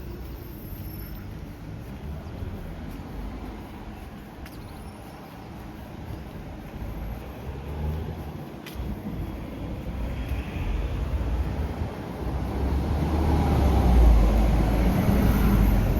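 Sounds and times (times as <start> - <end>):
faint clicks: 3.9 - 6.8.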